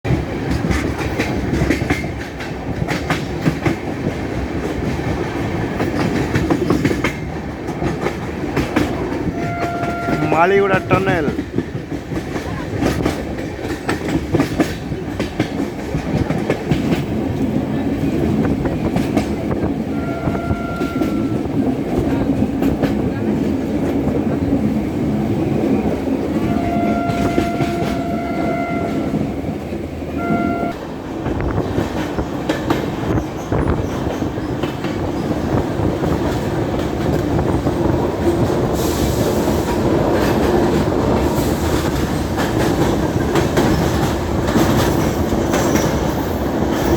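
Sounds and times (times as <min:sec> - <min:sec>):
train wheel clatter and rumble: 0:00.0 - 0:46.9
train horn blasts: 0:09.2 - 0:11.4, 0:19.9 - 0:21.5, 0:26.4 - 0:29.4, 0:30.2 - 0:30.8.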